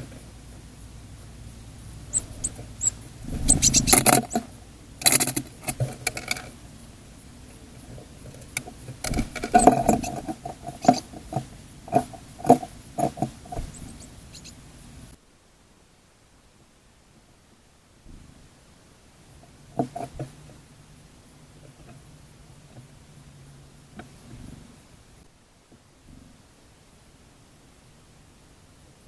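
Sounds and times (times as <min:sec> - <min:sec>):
beaks pecking on feeder tray: 0:00.0 - 0:15.1
bird feet scratching on tray: 0:02.1 - 0:06.6.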